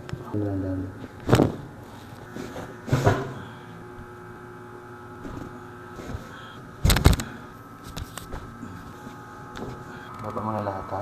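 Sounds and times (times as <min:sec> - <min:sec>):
sharp cracks and knocks: 0:06.8 - 0:08.5.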